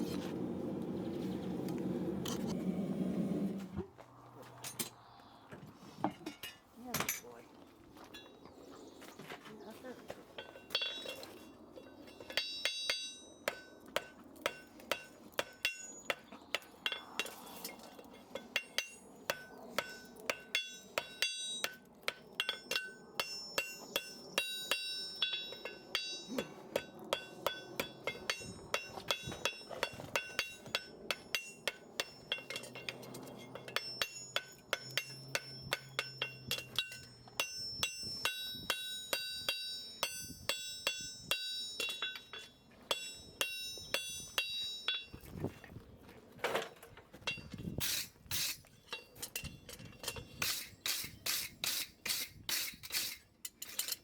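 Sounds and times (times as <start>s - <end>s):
hammer striking steel: 12.2s - 17.4s, 18.3s - 45.2s.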